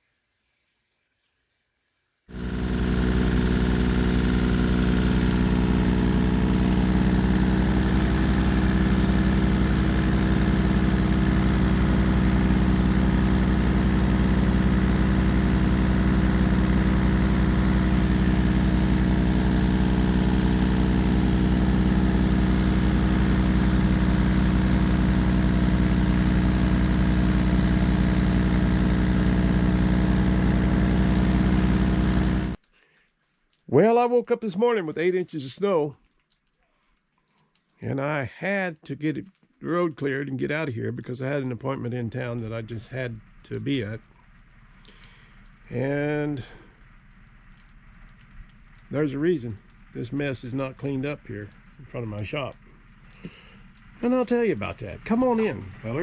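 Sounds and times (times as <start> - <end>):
tractor diesel engine running: 2.3 - 32.6, 44.8 - 56.0.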